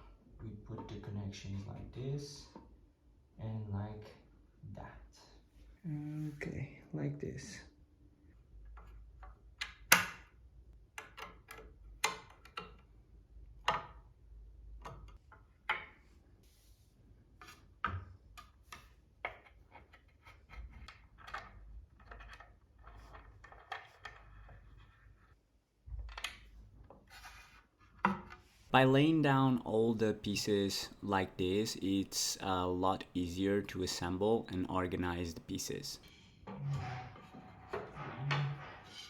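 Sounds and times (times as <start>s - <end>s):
wood rubbing and scraping: 30.5s - 39.0s.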